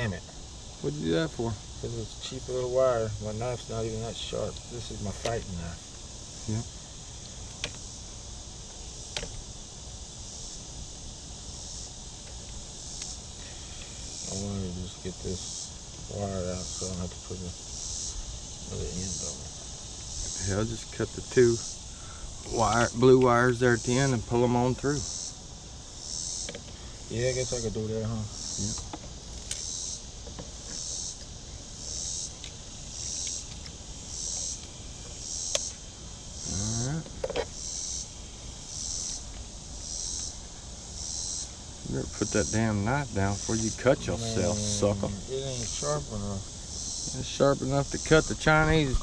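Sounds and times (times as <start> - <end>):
high-pitched insect chorus: 0.0 - 49.0.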